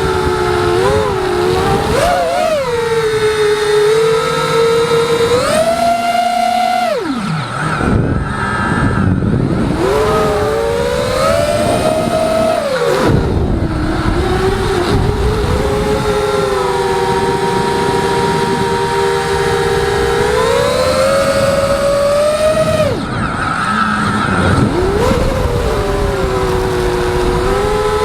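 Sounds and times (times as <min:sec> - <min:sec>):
quadcopter motors whining: 0:00.0 - 0:28.0.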